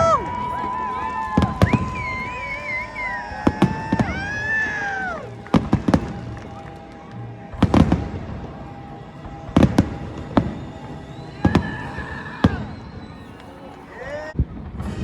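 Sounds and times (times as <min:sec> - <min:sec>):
firework shells bursting with bangs: 0:00.0 - 0:13.9.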